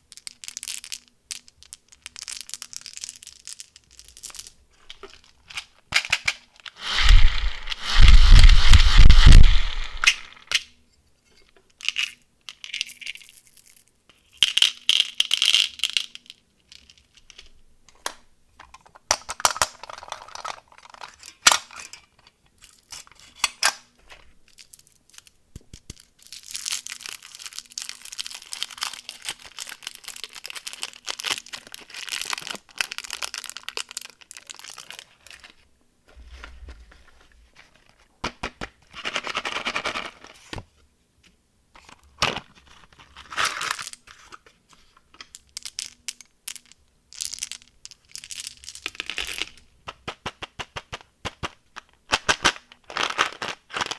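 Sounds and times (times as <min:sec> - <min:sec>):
candies clicking and clinking: 0:00.1 - 0:10.6, 0:19.1 - 0:21.7, 0:24.5 - 0:35.5, 0:45.2 - 0:50.1
wrappers tearing and crinkling: 0:06.7 - 0:10.5, 0:26.0 - 0:35.6.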